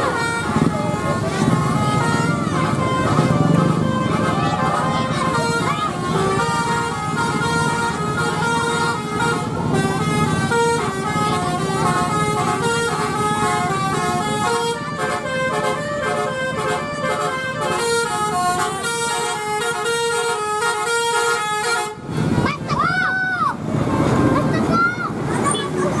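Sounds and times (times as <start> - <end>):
vehicle engine running: 0.0 - 20.1
multi-tone musical bus horn: 0.0 - 22.4.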